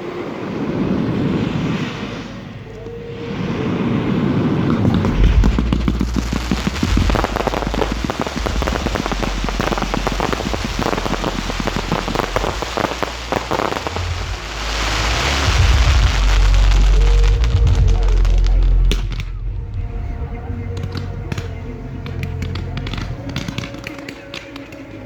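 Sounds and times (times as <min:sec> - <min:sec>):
hissing firework burst: 0:03.2 - 0:19.5
firework crackle: 0:04.2 - 0:19.8, 0:20.8 - 0:25.0
low thuds of shells firing: 0:04.8 - 0:19.5.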